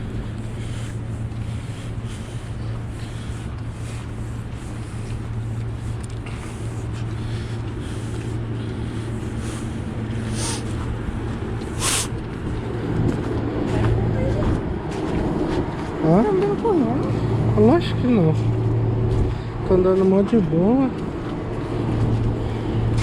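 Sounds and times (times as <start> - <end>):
road noise: 0.0 - 23.0
vehicle engines humming: 0.0 - 23.0
short sharp hiss: 11.8 - 12.1.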